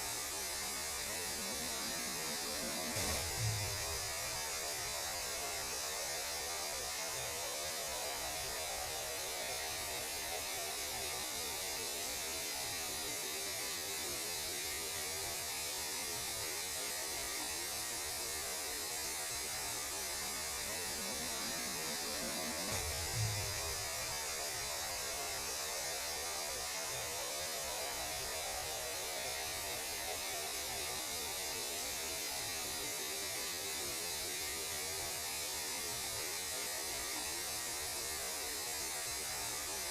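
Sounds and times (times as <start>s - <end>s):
static hiss: 0.0s - 39.9s
underlying hum: 1.4s - 4.6s, 21.0s - 24.3s
low thump: 3.0s - 4.0s.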